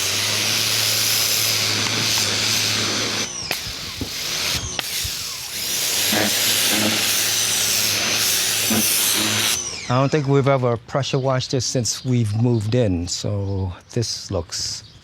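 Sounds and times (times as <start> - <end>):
high-pressure water jet hissing: 0.0 - 10.2
electric motor hum: 0.0 - 10.4.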